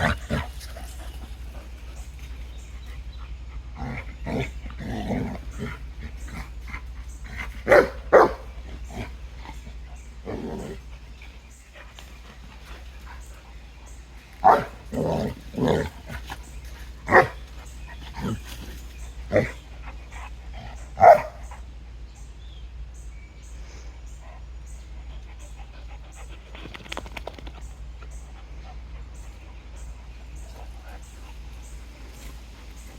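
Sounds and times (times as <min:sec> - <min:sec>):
dog barking: 0:07.6 - 0:08.6, 0:14.4 - 0:15.8, 0:17.1 - 0:17.4, 0:21.0 - 0:21.5.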